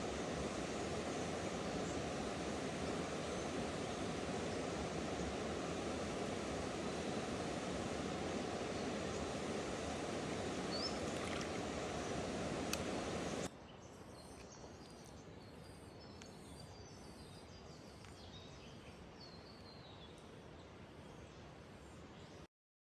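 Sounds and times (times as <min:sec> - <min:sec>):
steady rushing noise: 0:00.0 - 0:13.5
birds chirping: 0:10.3 - 0:12.3.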